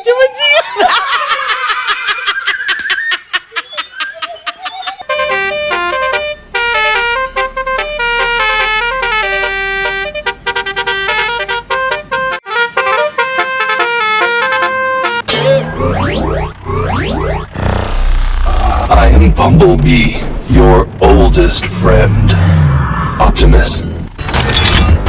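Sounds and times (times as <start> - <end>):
multi-tone bus horn melody: 5.0 - 16.7.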